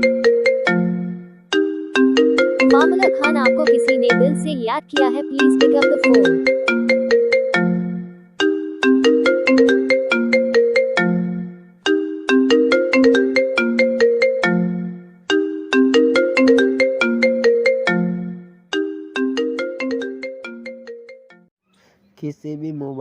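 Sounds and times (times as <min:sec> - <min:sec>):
phone ringtone melody: 0:00.0 - 0:21.5.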